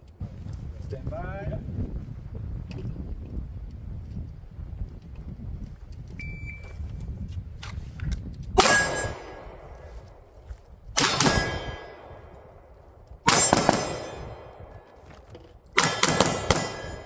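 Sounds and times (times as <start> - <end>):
steel targets ringing: 8.6 - 9.9, 11.0 - 12.3, 13.3 - 14.9, 15.8 - 17.0
pistol shots: 8.6 - 10.4, 11.0 - 15.1, 15.8 - 17.0.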